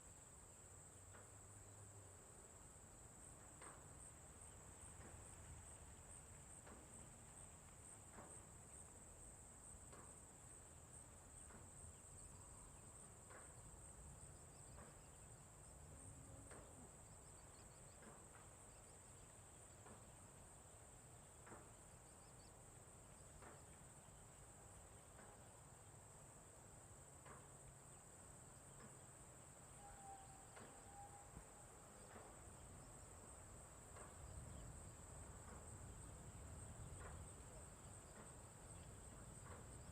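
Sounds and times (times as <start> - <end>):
faint short ticks: 16.4 - 16.8, 30.5 - 30.9
high-pitched insect chorus: 28.4 - 39.9.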